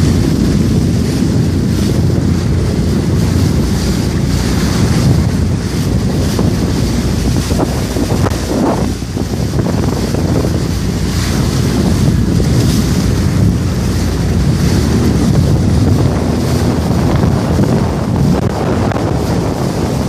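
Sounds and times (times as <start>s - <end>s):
jet ski engine running: 0.0s - 20.0s
water rushing: 0.0s - 20.0s
wind buffeting microphone: 0.0s - 20.0s.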